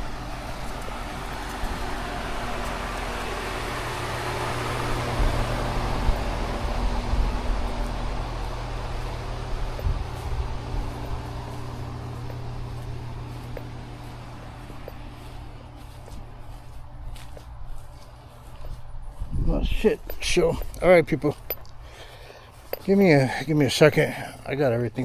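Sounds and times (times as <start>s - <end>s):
pressure washer engine running: 0.0s - 17.9s.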